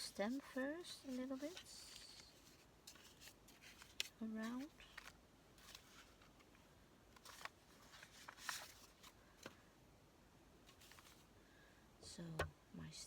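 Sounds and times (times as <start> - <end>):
paper rustling: 0.0 - 9.6, 10.7 - 11.3.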